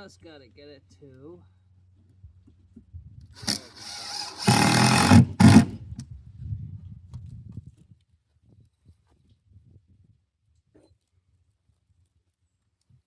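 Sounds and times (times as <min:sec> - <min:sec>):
power drill driving screws: 0:03.4 - 0:05.8
scraping and rattling of work: 0:03.4 - 0:05.8.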